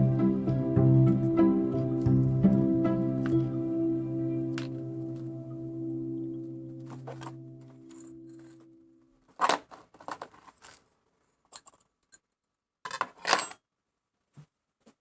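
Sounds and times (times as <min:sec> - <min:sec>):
musical tone: 0:00.0 - 0:09.1.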